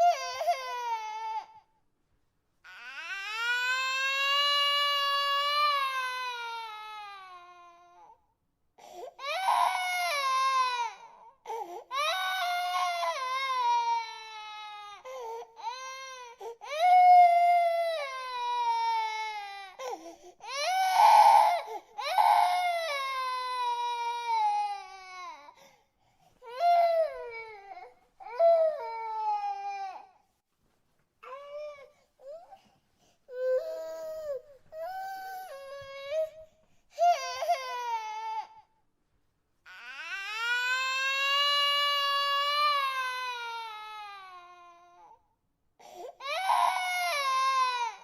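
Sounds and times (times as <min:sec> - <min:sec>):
infant crying: 0:00.0 - 0:01.7, 0:02.7 - 0:08.2, 0:08.8 - 0:25.7, 0:26.4 - 0:30.2, 0:31.2 - 0:32.6, 0:33.3 - 0:38.7, 0:39.7 - 0:45.2, 0:45.8 - 0:48.0.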